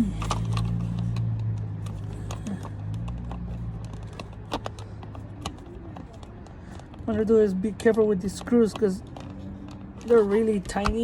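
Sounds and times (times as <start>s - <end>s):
small screws clicking and tapping: 0.0s - 7.1s, 7.8s - 11.0s.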